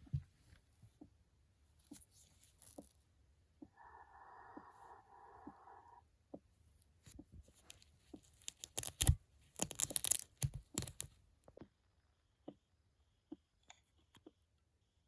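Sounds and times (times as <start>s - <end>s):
velcro ripping open: 8.4s - 11.1s.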